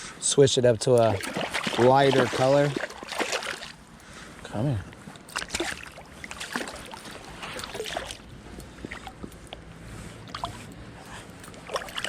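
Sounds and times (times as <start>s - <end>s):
stream water trickling: 0.8s - 12.0s
small splashes: 1.0s - 3.8s, 5.2s - 9.3s, 10.2s - 10.7s, 11.4s - 12.0s.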